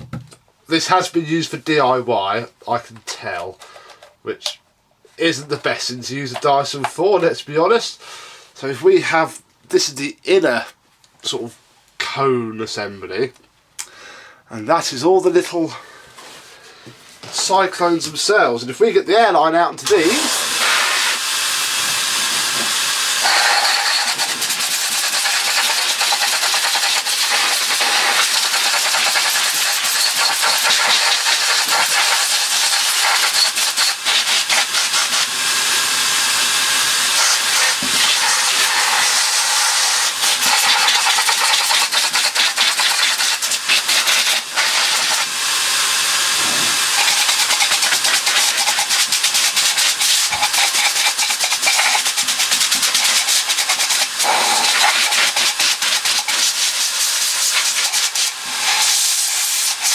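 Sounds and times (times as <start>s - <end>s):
compressed air hissing: 19.8s - 59.9s.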